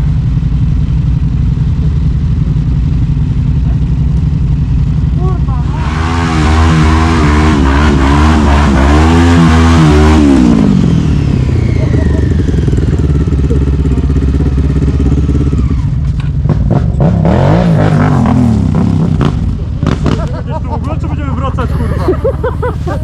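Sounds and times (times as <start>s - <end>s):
quad engine revving: 5.1s - 23.0s.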